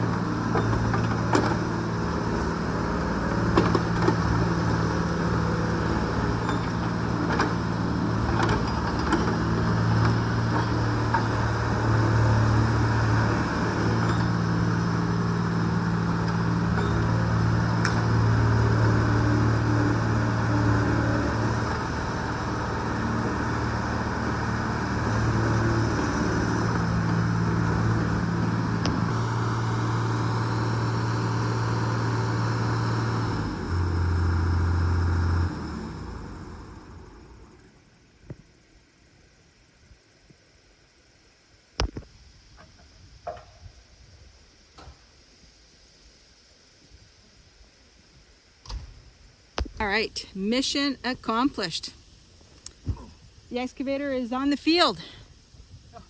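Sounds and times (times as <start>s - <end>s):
excavator engine running: 0.0s - 38.2s, 49.6s - 55.8s.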